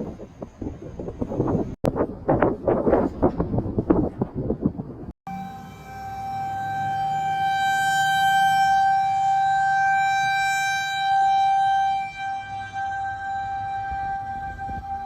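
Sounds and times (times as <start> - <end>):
low wind rumble: 0.0 - 7.4, 11.9 - 15.0
warning siren wailing: 5.3 - 15.0.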